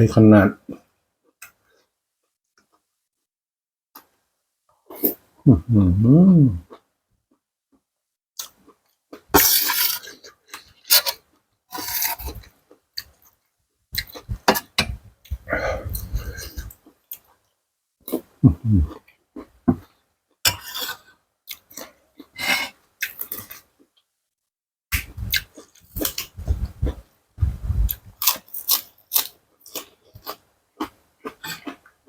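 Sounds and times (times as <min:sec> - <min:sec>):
crunching and chewing: 0:18.9 - 0:23.7, 0:25.0 - 0:27.1, 0:27.9 - 0:32.0.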